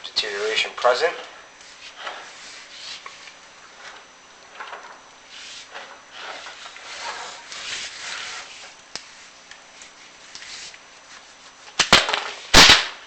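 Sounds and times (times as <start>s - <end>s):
camera cable scraping in flue: 1.6s - 10.8s.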